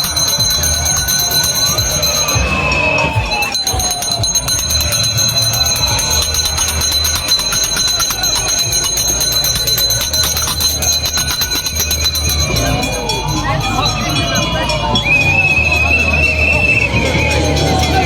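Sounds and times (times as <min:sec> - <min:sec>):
bells ringing: 0:00.0 - 0:18.0
high-pitched alarm-like tones: 0:00.0 - 0:18.0.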